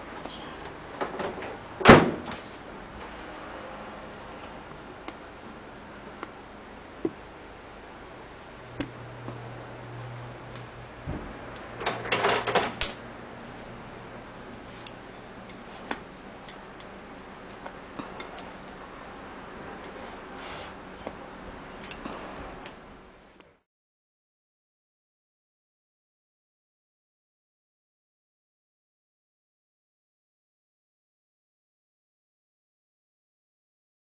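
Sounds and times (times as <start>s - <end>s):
low hum: 2.6s - 23.4s.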